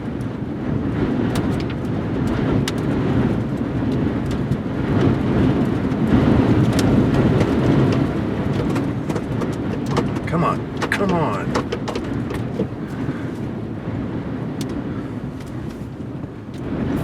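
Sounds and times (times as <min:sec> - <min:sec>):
strong wind rushing: 0:00.0 - 0:17.0.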